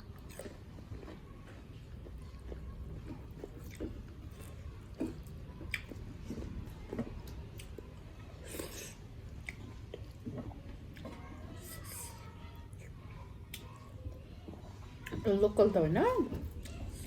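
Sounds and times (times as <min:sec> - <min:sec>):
person chewing food: 0:00.0 - 0:12.0.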